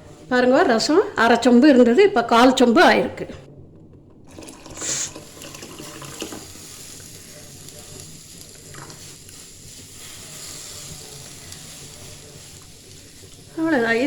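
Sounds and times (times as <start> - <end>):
pot bubbling and hissing: 0.0 - 14.0
water splashing into pot: 4.2 - 9.5.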